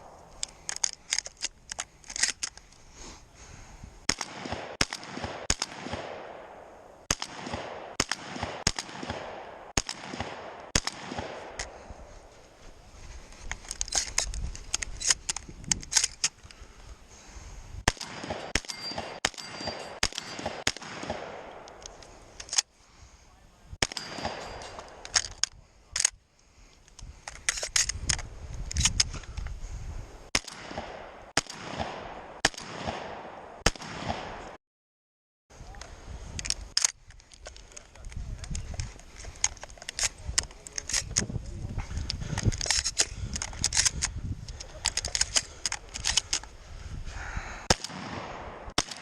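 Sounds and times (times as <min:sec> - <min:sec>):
handling and movement noise: 0:00.0 - 0:03.6, 0:10.2 - 0:22.7, 0:35.6 - 0:47.0
shotgun shots: 0:04.0 - 0:11.8, 0:17.8 - 0:21.8, 0:23.8 - 0:25.2, 0:30.3 - 0:34.6, 0:47.6 - 0:49.0.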